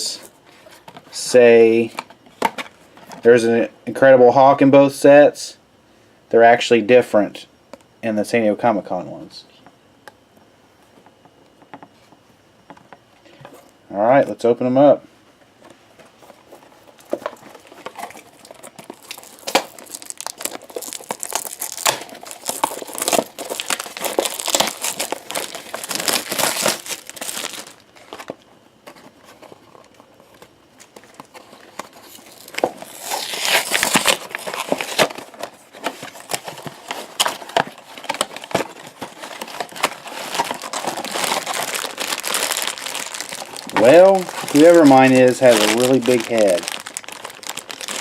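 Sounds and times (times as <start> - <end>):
crinkly wrappers crackling: 16.0 - 48.0
boxes being torn open: 16.9 - 29.4, 31.0 - 48.0.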